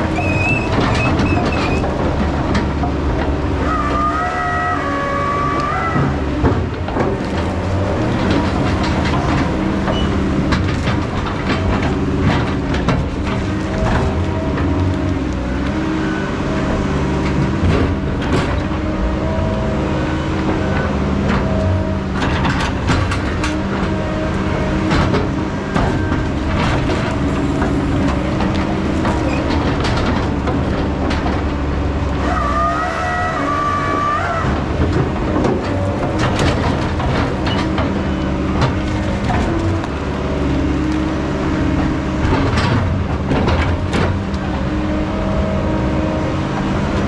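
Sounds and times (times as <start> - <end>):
heavy machine engine running: 0.0 - 47.0
metal clanks and knocks: 5.9 - 15.4, 20.4 - 31.9, 34.4 - 40.5, 41.6 - 44.8.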